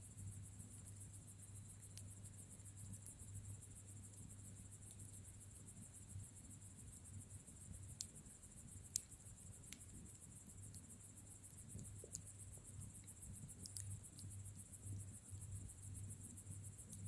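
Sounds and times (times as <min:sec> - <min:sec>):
bonfire crackling pops: 0:07.7 - 0:17.0.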